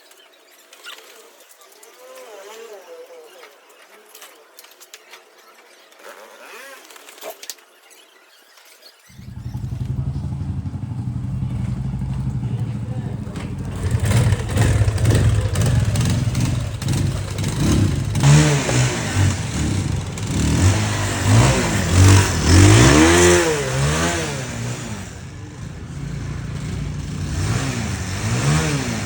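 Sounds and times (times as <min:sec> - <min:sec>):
motorcycle engine revving: 0:09.1 - 0:29.0.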